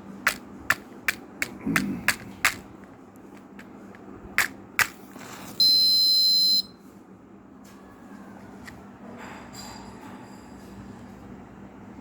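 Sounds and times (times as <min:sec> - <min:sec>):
high-pitched buzzer beep: 0:05.6 - 0:06.7.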